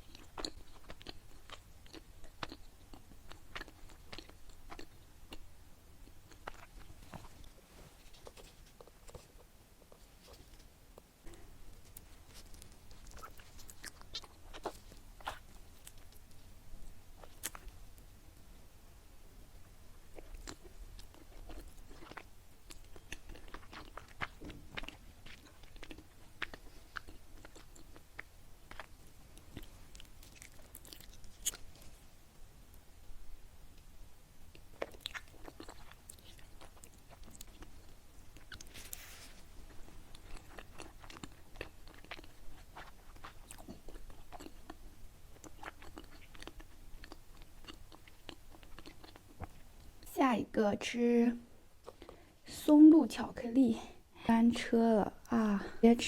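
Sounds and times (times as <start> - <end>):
person chewing wet smacks: 0.0 - 5.4, 6.0 - 7.3, 11.0 - 16.4, 20.1 - 31.9, 34.5 - 39.0, 39.7 - 50.0.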